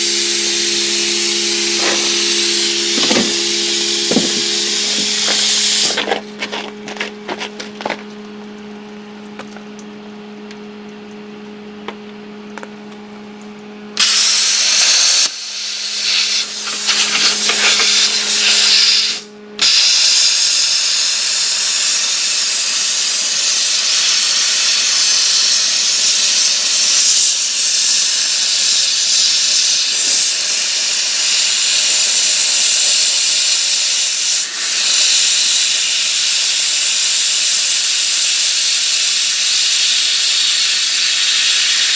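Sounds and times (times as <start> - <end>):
plasma cutter arc hissing: 0.0 - 6.0, 14.0 - 41.9
steady low hum: 0.0 - 14.0.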